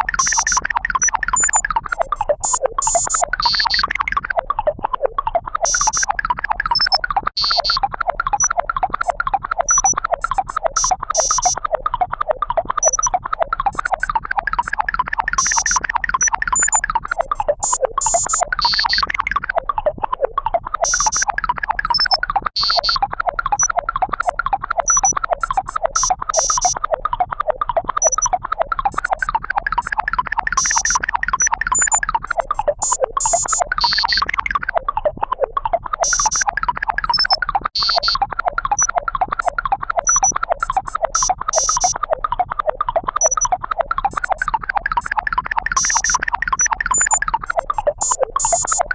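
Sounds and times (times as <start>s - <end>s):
warbling synthesized tones: 0.0s - 48.9s
short high-pitched blips: 0.2s - 4.3s, 5.6s - 11.6s, 12.8s - 19.2s, 20.8s - 26.8s, 28.0s - 30.0s, 30.6s - 34.5s, 36.0s - 42.0s, 42.9s - 48.9s.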